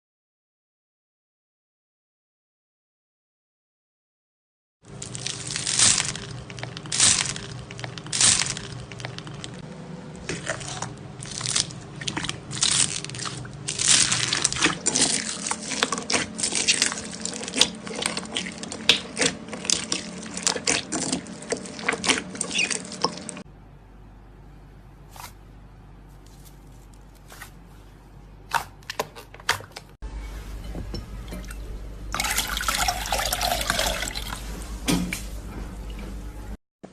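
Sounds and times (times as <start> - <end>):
slime crackling and popping: 5.0 - 9.6, 11.2 - 19.0.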